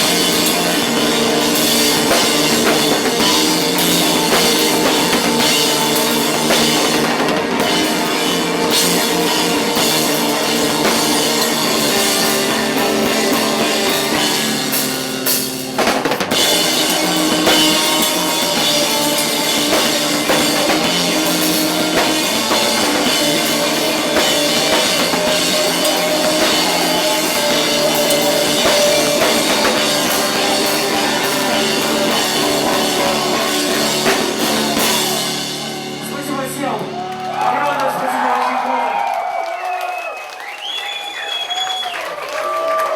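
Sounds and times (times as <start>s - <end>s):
rock band playing loudly: 0.0s - 39.3s.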